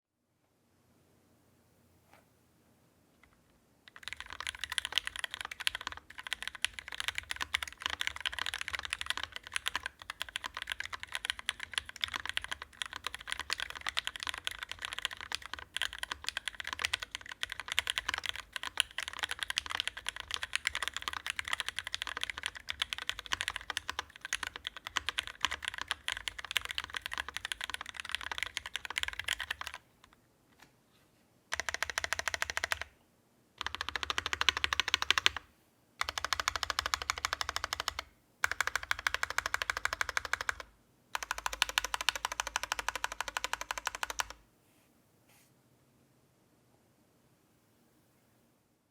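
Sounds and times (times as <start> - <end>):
mechanical keyboard typing: 3.9 - 29.8, 31.5 - 33.0, 33.6 - 35.4, 36.0 - 44.4.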